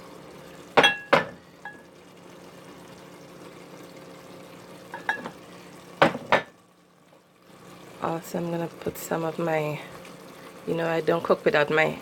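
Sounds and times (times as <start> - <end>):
sauce sizzling in a pot: 0.0 - 12.0
utensil clinking against pot: 0.8 - 1.8.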